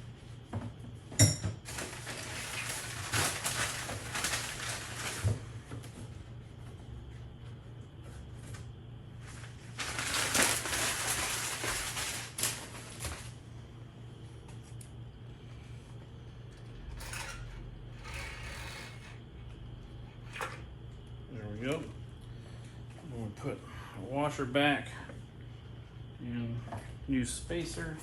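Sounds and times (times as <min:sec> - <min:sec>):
spring scraping inside fork tube: 0:16.9 - 0:19.2.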